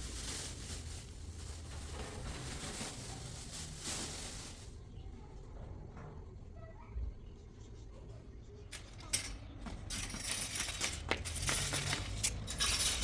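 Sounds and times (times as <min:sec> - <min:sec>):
light clinks and knocks: 0:08.7 - 0:13.0.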